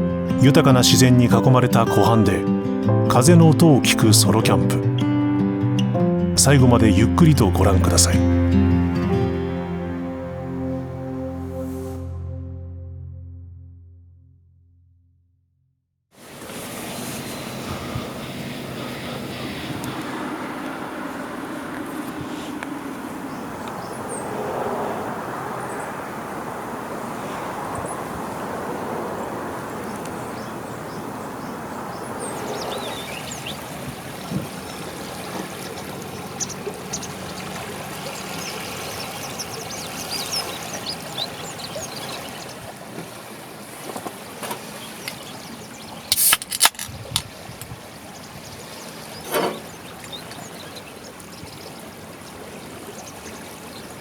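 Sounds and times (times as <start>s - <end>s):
wind: 0.0s - 12.3s, 16.1s - 54.0s
water lapping at shoreline: 16.2s - 54.0s.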